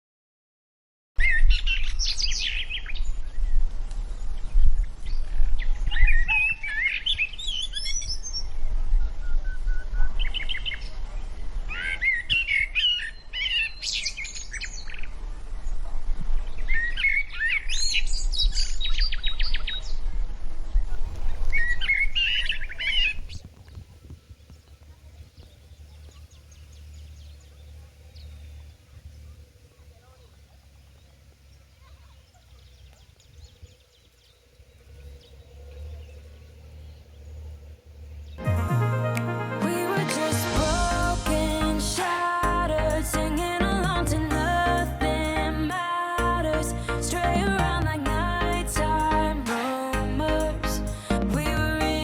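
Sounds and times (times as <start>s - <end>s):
songbirds chirping and trilling: 1.2s - 20.2s, 20.8s - 38.4s
low steady rumble: 20.9s - 38.4s, 40.6s - 52.0s.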